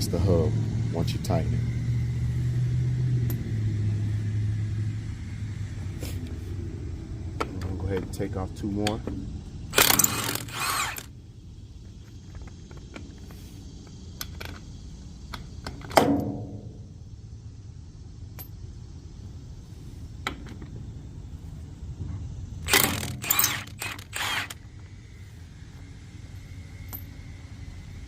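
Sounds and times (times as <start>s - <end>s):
impact wrench bursts: 9.7s - 11.1s, 22.6s - 24.6s
metal clinks: 26.8s - 27.2s.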